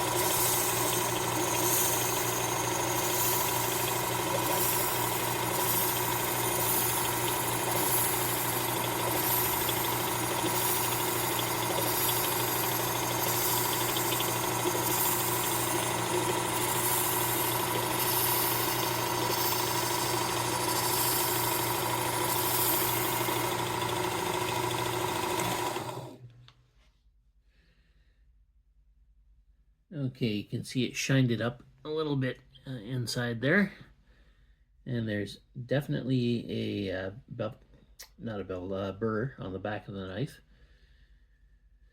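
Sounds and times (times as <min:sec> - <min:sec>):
abrasive belt grinding knife: 0:00.0 - 0:23.5
knife sharpener motor running: 0:00.0 - 0:26.2.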